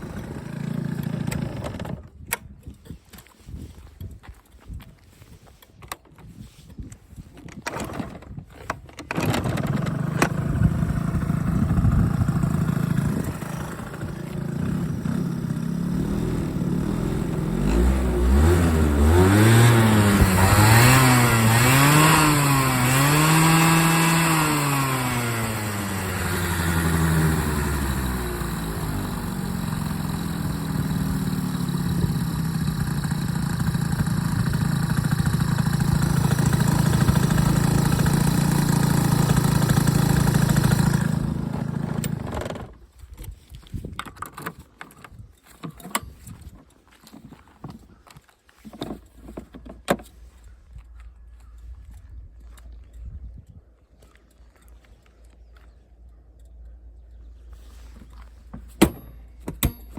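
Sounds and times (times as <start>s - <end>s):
motorcycle engine revving and idling: 0.0s - 2.3s, 8.0s - 43.1s, 54.4s - 59.9s.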